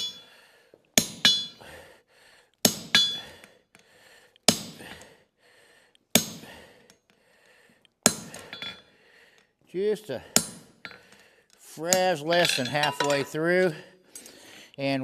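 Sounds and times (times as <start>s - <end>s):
hammer striking hot steel: 0.0s - 0.2s, 1.0s - 1.6s, 2.6s - 3.4s, 4.5s - 4.8s, 6.1s - 6.5s, 8.0s - 8.9s, 10.3s - 11.0s.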